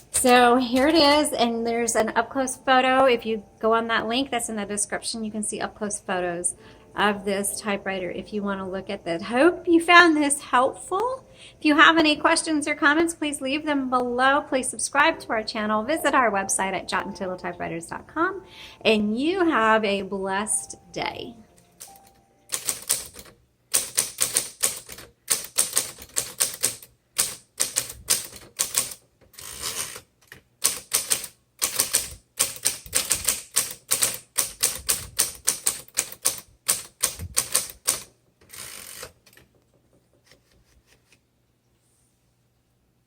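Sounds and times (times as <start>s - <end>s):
manual typewriter typing: 0.0s - 1.4s, 21.8s - 39.6s.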